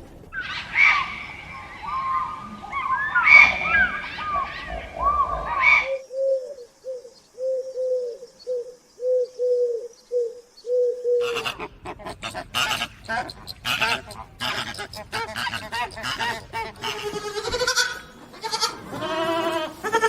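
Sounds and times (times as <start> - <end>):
birds calling: 0.4 - 20.0
dove cooing: 3.2 - 17.8.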